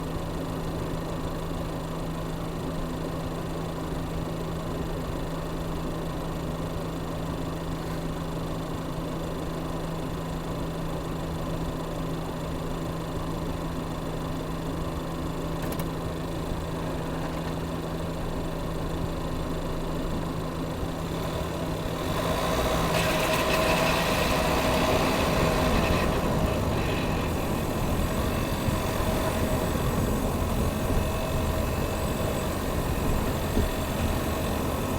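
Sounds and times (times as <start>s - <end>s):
car engine humming: 15.9s - 34.9s.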